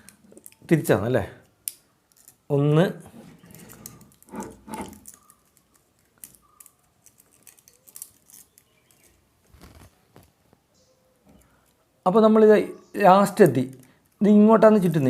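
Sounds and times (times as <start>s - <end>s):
wire rustles: 2.1s - 10.6s
wire scraping and ticking: 3.4s - 10.3s.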